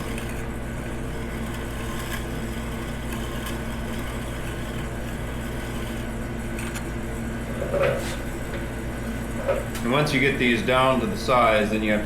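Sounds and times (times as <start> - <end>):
grinder motor humming: 0.0 - 12.0.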